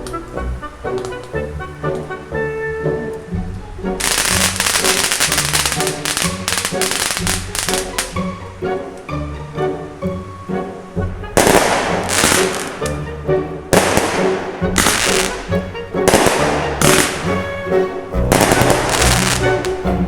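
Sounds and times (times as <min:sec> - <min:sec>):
background music: 0:00.0 - 0:20.0
fireworks bangs and crackling: 0:04.0 - 0:08.3, 0:11.4 - 0:13.0, 0:13.7 - 0:17.4, 0:18.3 - 0:19.8.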